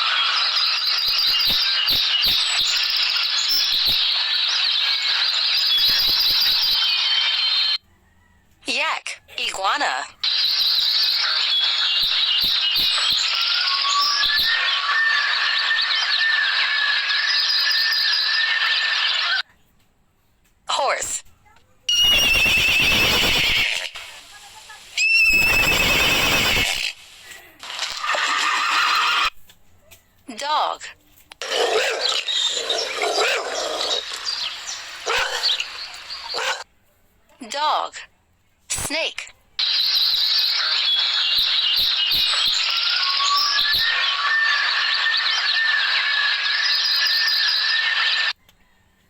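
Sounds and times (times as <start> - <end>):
chorus of chirping: 0.0 - 7.9, 10.1 - 19.5, 21.9 - 29.3, 31.4 - 36.6, 39.6 - 48.4
bird calls: 0.0 - 8.4, 10.2 - 19.4, 31.4 - 36.6, 39.6 - 48.4
steady hiss: 22.8 - 27.8
dog barking: 35.0 - 35.6, 36.3 - 36.7.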